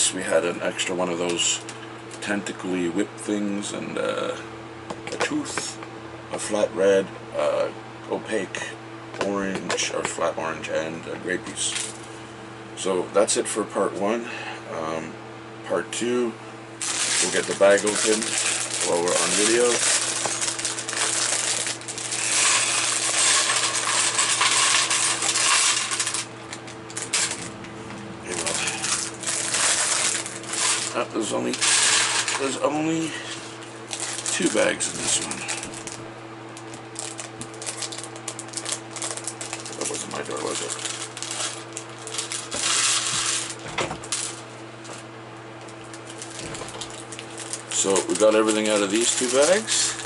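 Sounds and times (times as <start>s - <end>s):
plastic pieces clattering: 16.8s - 27.5s, 28.3s - 32.6s, 37.0s - 44.4s, 46.0s - 50.0s.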